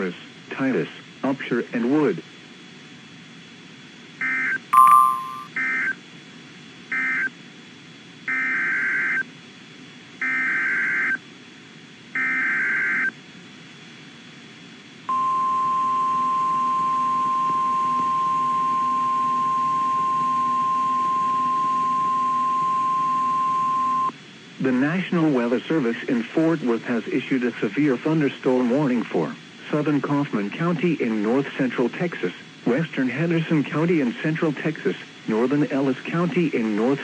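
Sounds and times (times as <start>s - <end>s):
digital data pulses: 4.8s - 5.5s
loud beep: 4.8s - 5.5s
steady warning alarm tone: 15.1s - 24.1s.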